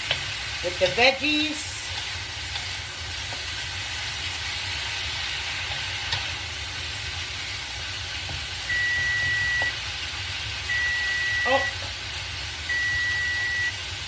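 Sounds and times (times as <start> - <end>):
food sizzling in a pan: 0.0 - 14.0
electronic beep: 8.7 - 9.7, 10.7 - 11.8, 12.7 - 13.7.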